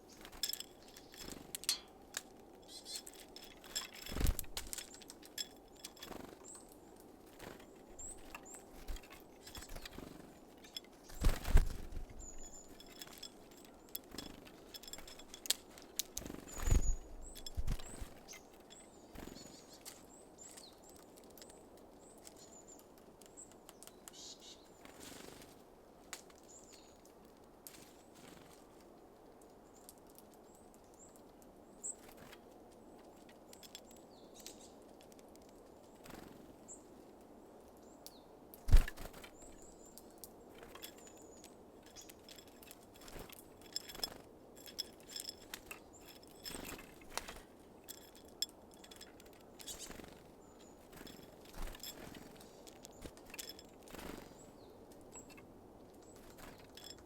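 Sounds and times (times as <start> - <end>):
songbirds calling: 0.0 - 25.5, 29.5 - 57.0.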